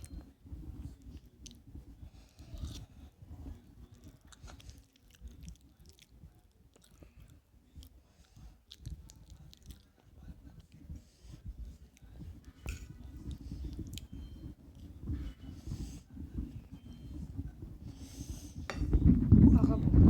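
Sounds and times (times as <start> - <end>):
person chewing soft food: 2.3 - 15.4.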